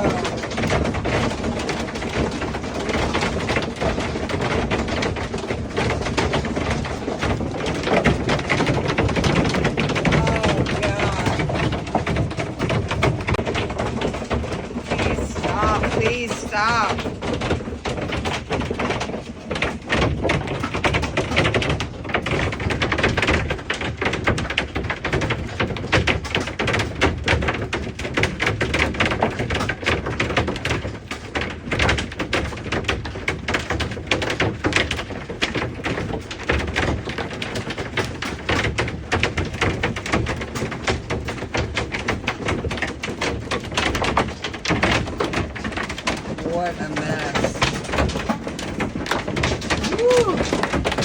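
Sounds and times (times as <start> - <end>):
hail clattering on a roof: 0.0 - 51.0.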